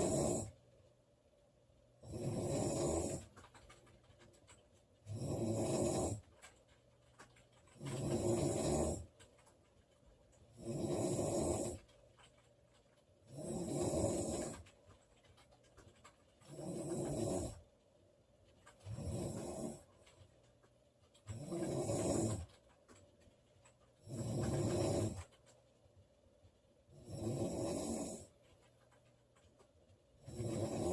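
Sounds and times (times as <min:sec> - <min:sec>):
woman snoring: 0:00.0 - 0:00.5, 0:02.0 - 0:03.3, 0:05.1 - 0:06.2, 0:07.8 - 0:09.0, 0:10.6 - 0:11.8, 0:13.3 - 0:14.6, 0:16.5 - 0:17.6, 0:18.9 - 0:19.8, 0:21.3 - 0:22.5, 0:24.1 - 0:25.3, 0:27.0 - 0:28.3, 0:30.2 - 0:30.9
quiet breathing: 0:00.0 - 0:30.9.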